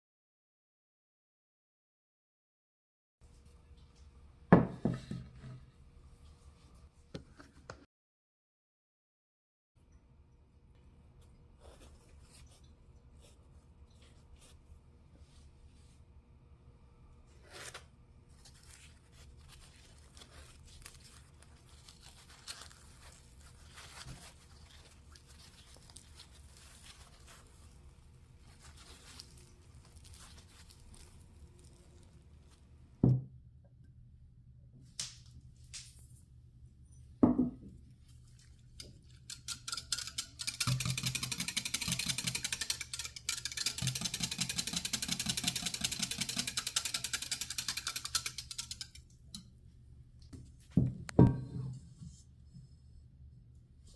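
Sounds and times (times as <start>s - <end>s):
ingredients mixed in a bowl: 17.4s - 33.0s, 37.8s - 49.6s.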